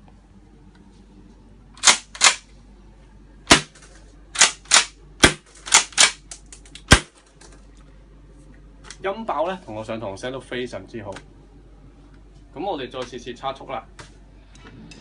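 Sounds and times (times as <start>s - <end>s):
airsoft shotgun shots: 1.8s - 2.4s, 3.5s - 3.8s, 4.4s - 6.2s, 6.9s - 7.2s.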